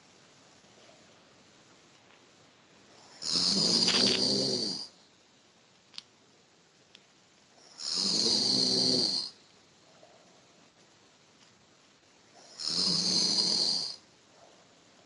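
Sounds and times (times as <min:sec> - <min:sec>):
person snoring: 0:03.0 - 0:05.0, 0:07.6 - 0:09.4, 0:12.4 - 0:14.0
faint clicks: 0:05.7 - 0:06.2.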